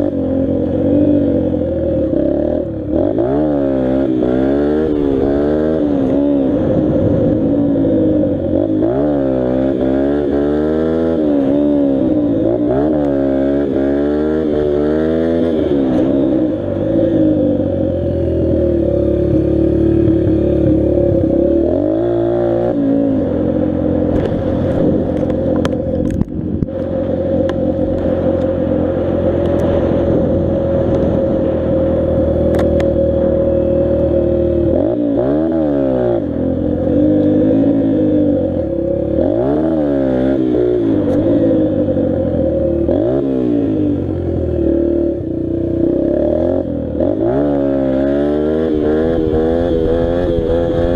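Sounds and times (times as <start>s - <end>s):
dirt bike engine revving: 0.0s - 50.9s
sharp clicks and clatter: 24.1s - 28.5s.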